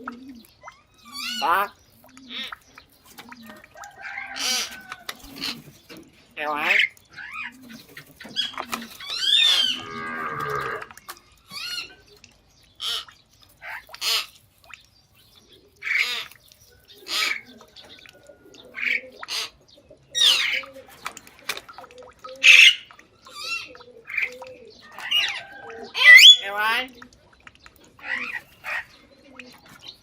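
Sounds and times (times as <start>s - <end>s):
animal wavering call: 9.3s - 10.9s, 25.2s - 26.4s.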